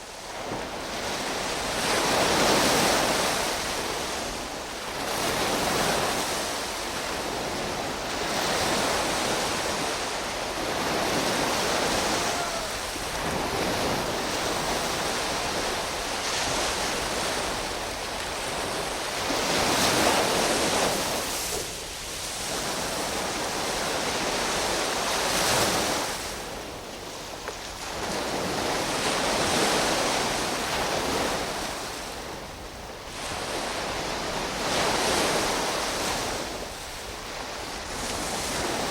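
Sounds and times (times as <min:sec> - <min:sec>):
waves rushing: 0:00.0 - 0:38.9.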